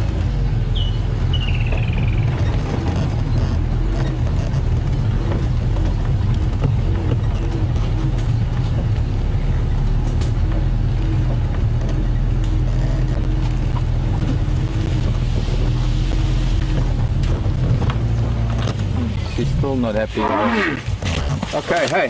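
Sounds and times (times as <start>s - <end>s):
vehicle engine idling: 0.0s - 20.2s.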